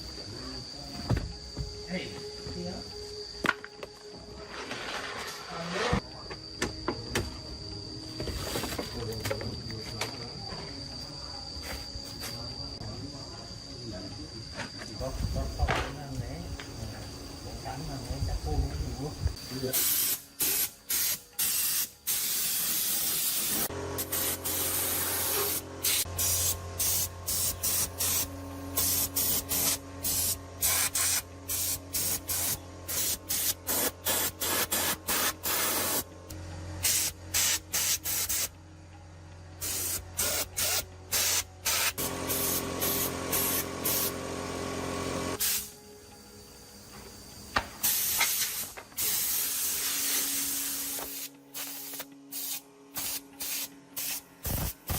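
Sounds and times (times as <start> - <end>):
compressed air hissing bursts: 19.3 - 36.1, 36.8 - 38.5, 39.6 - 44.3, 45.3 - 46.0, 47.8 - 54.9
motor humming: 38.5 - 45.4.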